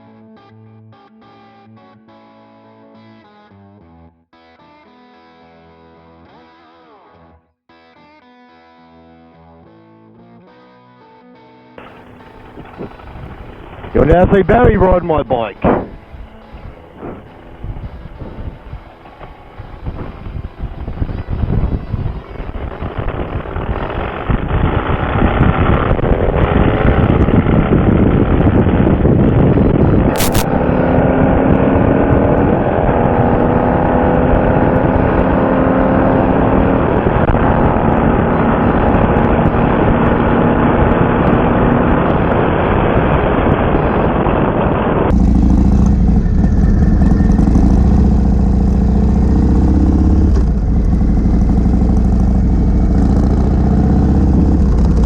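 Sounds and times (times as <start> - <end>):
motorcycle engine revving: 11.8 - 14.7, 15.6 - 44.2, 45.0 - 55.0
wind rush: 11.8 - 55.0.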